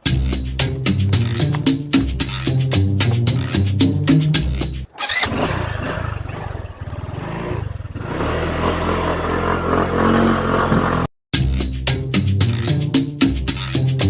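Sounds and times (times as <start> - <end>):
motorcycle engine running: 5.1 - 11.1.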